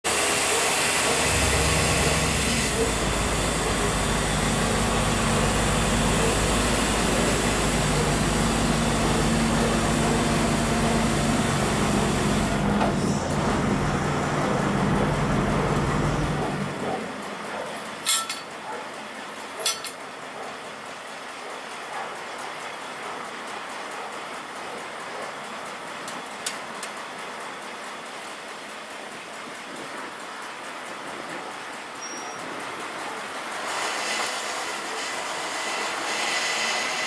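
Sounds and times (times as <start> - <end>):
large engine running steadily: 0.1 - 18.4
rushing noise: 1.0 - 7.8.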